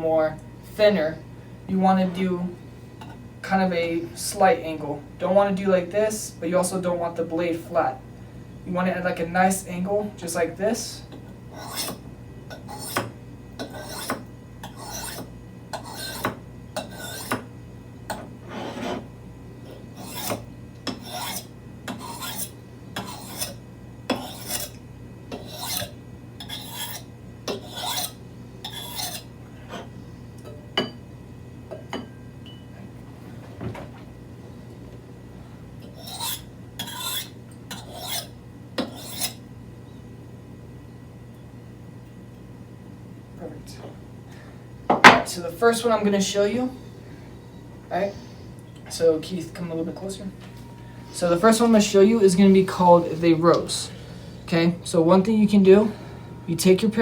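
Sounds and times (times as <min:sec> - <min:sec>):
knife scraping on sharpening stone: 0:11.6 - 0:17.4, 0:18.5 - 0:19.1, 0:19.7 - 0:29.9, 0:35.8 - 0:39.4.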